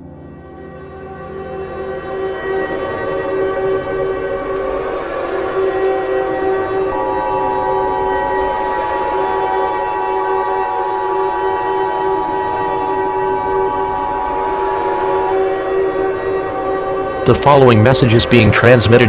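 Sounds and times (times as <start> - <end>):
multi-tone siren chord: 0.0 - 19.0.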